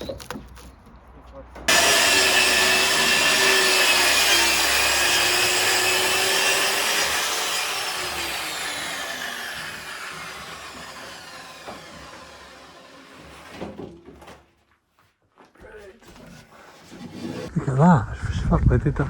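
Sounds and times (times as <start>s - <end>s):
power saw winding down: 1.7s - 13.4s.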